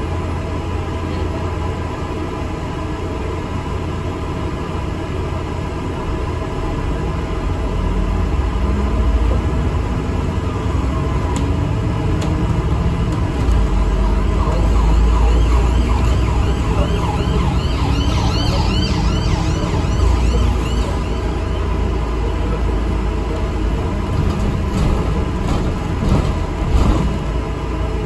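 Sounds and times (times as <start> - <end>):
bus engine rumble: 0.0 - 28.0
emergency siren wailing: 13.4 - 22.4.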